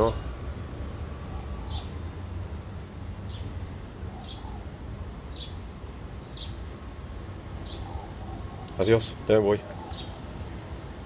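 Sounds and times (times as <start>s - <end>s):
bird chirping: 0.0s - 10.9s.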